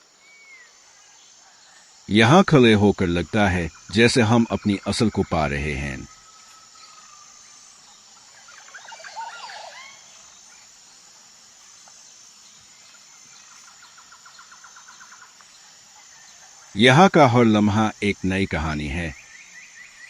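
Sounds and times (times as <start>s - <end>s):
bird chirps: 0.0s - 11.0s
faint steady hiss: 0.0s - 20.0s.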